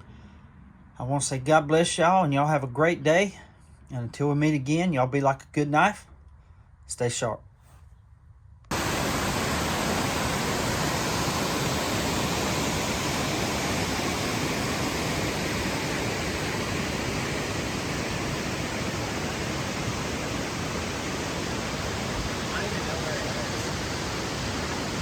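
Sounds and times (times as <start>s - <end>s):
steady rushing noise: 8.7s - 25.0s.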